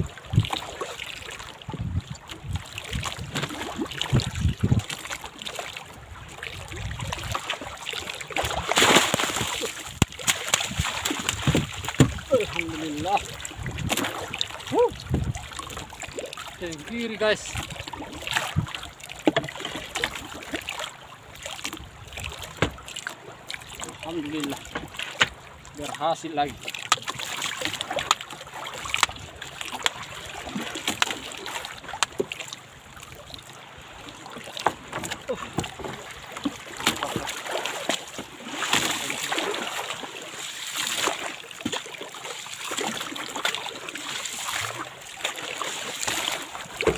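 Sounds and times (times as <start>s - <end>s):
water lapping around boat: 0.0s - 46.9s
knocks in a small boat: 1.7s - 5.0s, 8.7s - 12.7s, 18.3s - 20.2s, 21.6s - 23.0s, 23.8s - 25.4s, 34.5s - 39.1s, 46.0s - 46.9s
sharp knocks: 11.3s - 12.2s.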